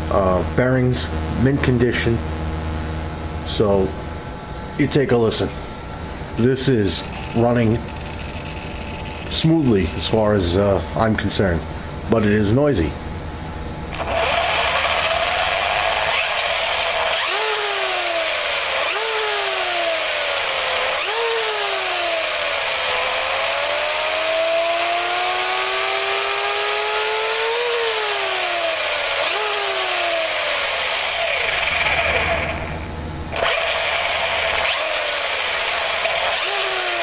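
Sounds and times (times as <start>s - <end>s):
rc truck motor whine: 7.0s - 10.6s, 13.9s - 37.0s.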